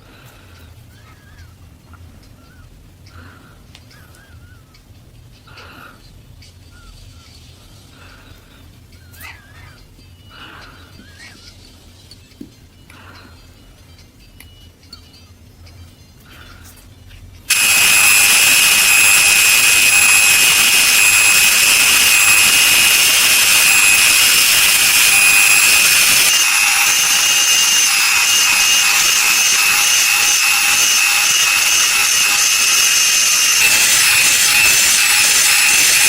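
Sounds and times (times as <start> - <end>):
power tool abrading metal: 17.5 - 36.0.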